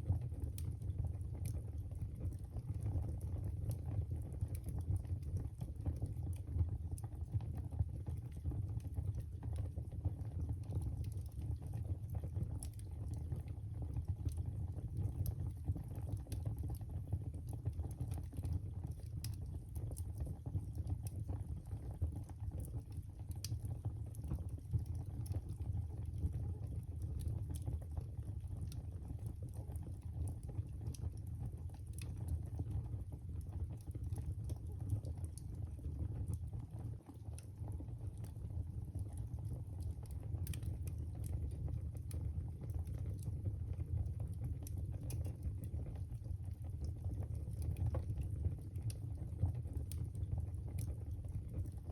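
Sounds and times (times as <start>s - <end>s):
fire crackling in fireplace: 0.0s - 51.9s.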